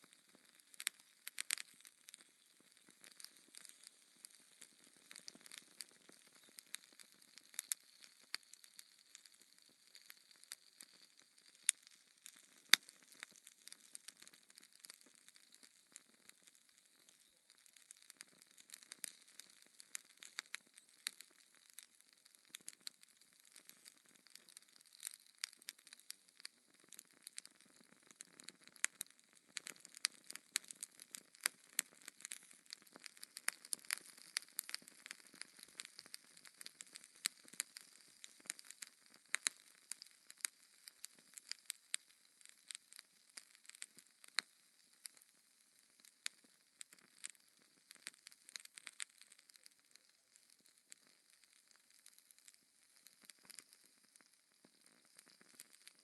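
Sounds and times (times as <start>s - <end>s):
wood fire crackling and popping: 0.0s - 56.0s.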